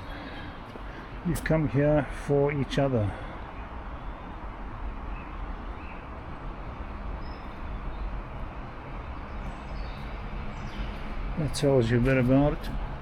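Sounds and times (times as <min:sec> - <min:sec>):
distant traffic rumble: 0:00.0 - 0:13.0
faint bird chirps: 0:07.2 - 0:08.2.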